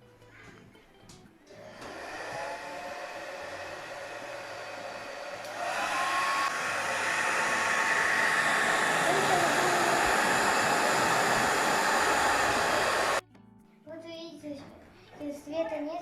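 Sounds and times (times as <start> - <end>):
hair dryer blowing: 1.5 - 13.2.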